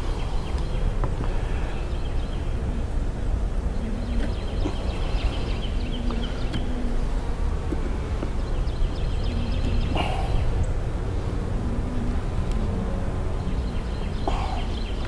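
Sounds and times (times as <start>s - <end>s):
small birds chirping: 3.8s - 11.2s, 13.4s - 15.0s.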